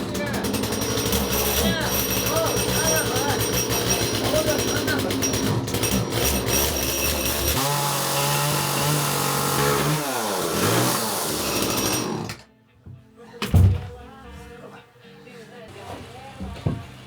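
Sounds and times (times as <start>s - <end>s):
small engine revving: 0.0s - 12.4s.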